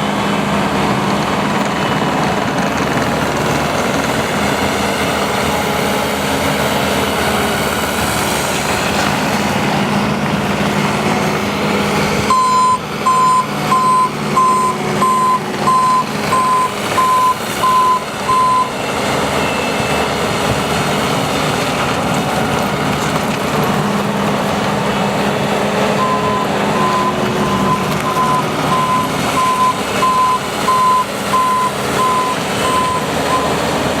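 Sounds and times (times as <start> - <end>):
diesel engine running: 0.0 - 34.0
back-up alarm beeping: 12.3 - 18.7, 26.0 - 33.6.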